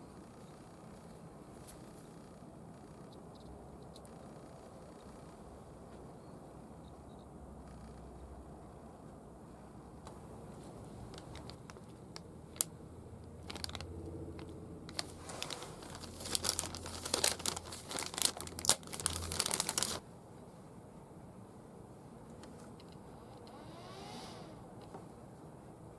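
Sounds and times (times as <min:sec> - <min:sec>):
faint low hum: 0:00.0 - 0:25.9
crinkling rustling handling noise: 0:10.1 - 0:20.0.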